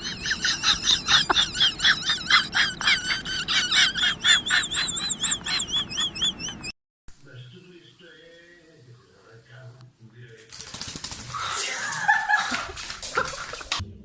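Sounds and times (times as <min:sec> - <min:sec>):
animal warbling high calls: 0:11.3 - 0:12.0.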